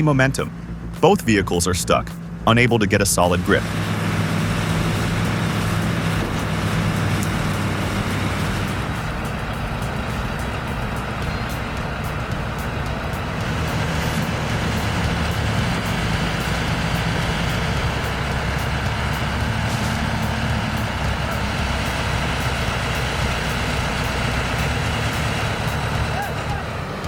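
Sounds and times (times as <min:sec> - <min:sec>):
heavy diesel engines under load: 0:00.0 - 0:27.0
faint regular ticking: 0:00.4 - 0:26.1.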